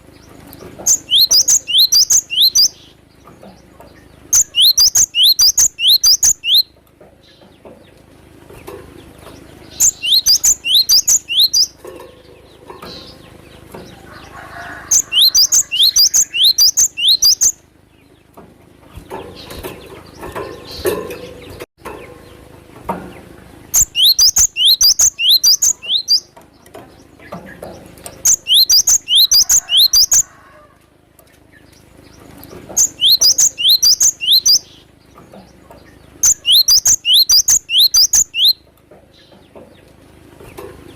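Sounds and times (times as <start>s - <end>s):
bird chirping in rapid bursts: 0.0s - 6.7s, 9.0s - 18.3s, 23.7s - 30.3s, 31.5s - 39.3s.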